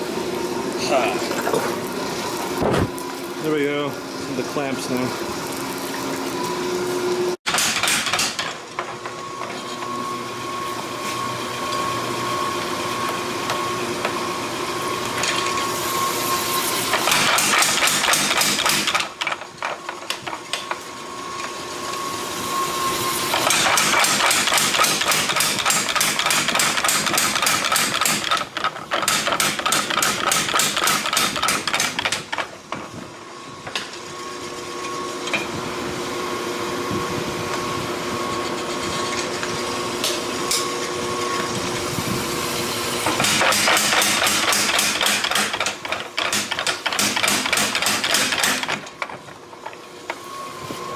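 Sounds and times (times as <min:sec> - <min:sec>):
hammer striking metal: 0:43.2 - 0:48.8.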